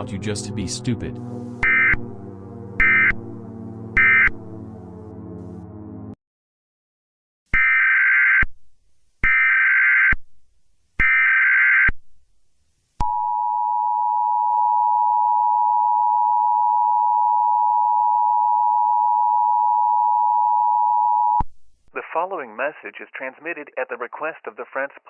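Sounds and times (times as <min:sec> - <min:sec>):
data tone bursts: 0:01.3 - 0:02.2, 0:02.8 - 0:03.4, 0:04.0 - 0:04.4
two-tone alert beep: 0:01.6 - 0:02.1, 0:02.8 - 0:03.2, 0:04.0 - 0:04.3.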